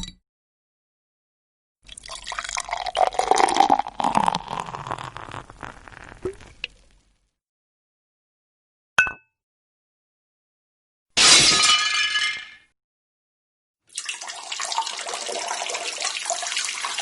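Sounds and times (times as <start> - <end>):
liquid pouring and splashing: 1.9 - 7.1, 13.9 - 17.0.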